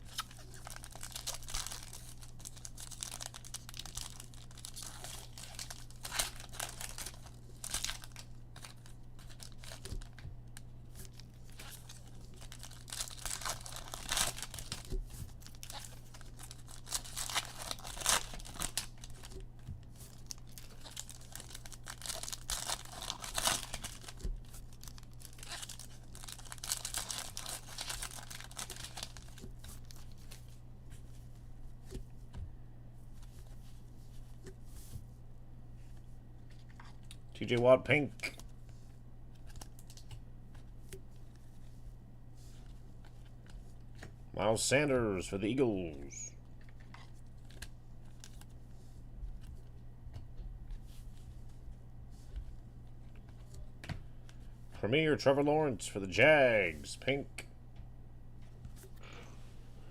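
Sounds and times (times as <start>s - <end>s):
foil wrappers tearing and crinkling: 0.0s - 10.2s, 10.9s - 30.4s
low electrical hum: 0.0s - 59.9s.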